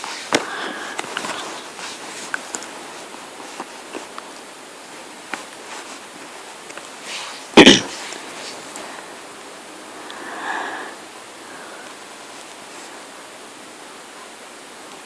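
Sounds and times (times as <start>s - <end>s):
steady hiss: 0.0s - 15.0s
loud noise burst: 7.5s - 8.0s.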